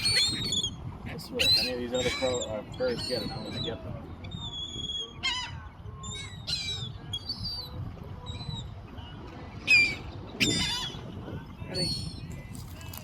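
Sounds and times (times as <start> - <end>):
seagulls squawking: 0.0 - 8.7, 9.6 - 12.9.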